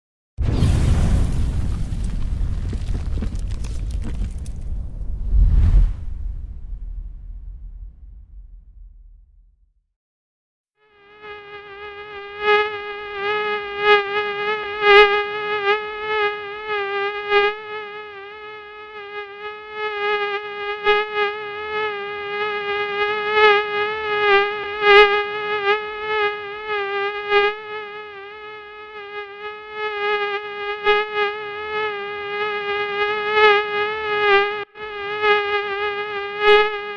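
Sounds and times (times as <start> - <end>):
mosquito wing whine: 10.8 - 36.9.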